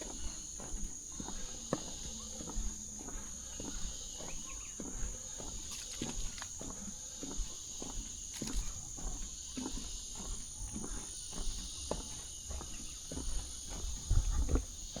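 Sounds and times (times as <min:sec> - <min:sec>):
insects droning: 0:00.0 - 0:15.0
thin high insect tone: 0:01.2 - 0:06.6
footsteps crunching on leaves: 0:05.4 - 0:06.7, 0:07.9 - 0:09.4.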